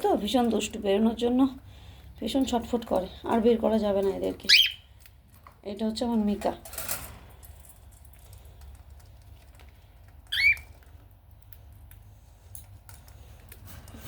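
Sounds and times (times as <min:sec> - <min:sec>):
cockatiel chirp: 0:04.5 - 0:04.8, 0:10.3 - 0:10.7.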